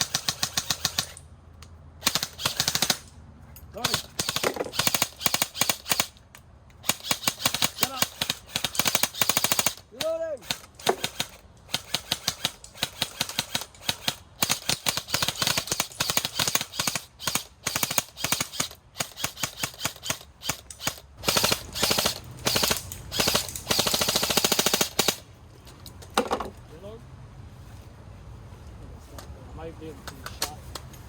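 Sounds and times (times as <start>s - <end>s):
airsoft guns firing: 0.0s - 1.2s, 2.0s - 3.2s, 3.8s - 6.2s, 6.8s - 25.2s.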